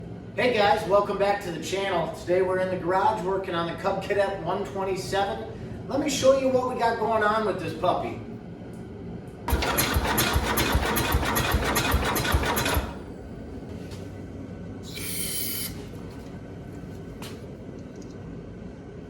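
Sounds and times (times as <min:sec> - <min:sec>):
engine cranking by starter: 0:09.5 - 0:13.1
short hiss: 0:14.9 - 0:15.8.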